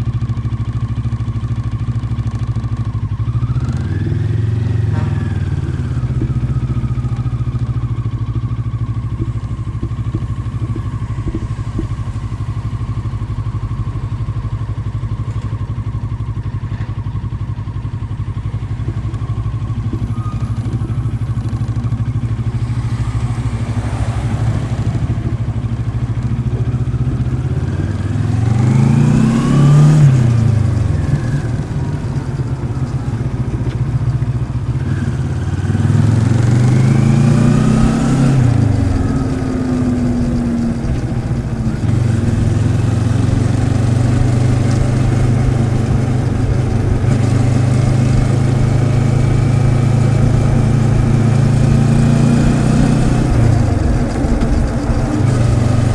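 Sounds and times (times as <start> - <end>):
motorcycle engine revving: 0.0 - 55.9.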